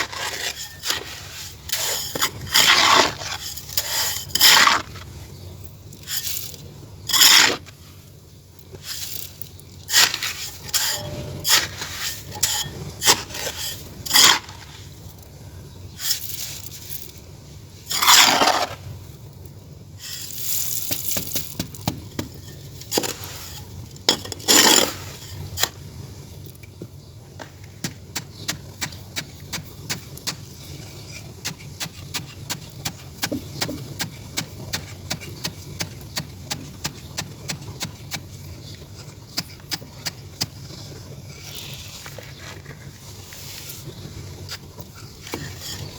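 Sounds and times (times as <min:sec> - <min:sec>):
clay scraping: 0:00.0 - 0:05.2, 0:06.0 - 0:07.8, 0:09.8 - 0:14.9, 0:27.4 - 0:45.9.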